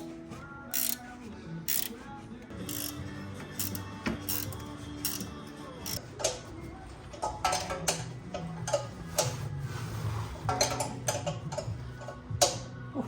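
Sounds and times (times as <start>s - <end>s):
low background music: 0.0s - 13.0s
hand ratchet clicking: 0.7s - 1.0s, 1.7s - 1.9s, 2.6s - 3.0s, 3.6s - 6.4s.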